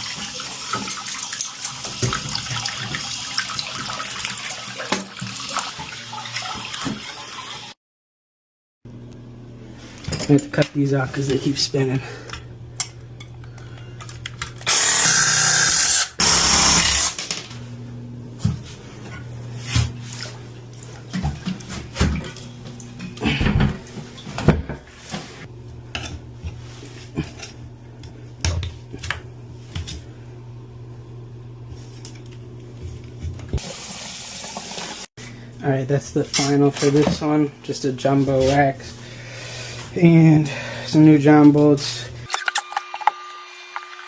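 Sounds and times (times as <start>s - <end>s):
power cutting tool cutting bolts: 14.6s - 17.4s, 42.3s - 44.0s.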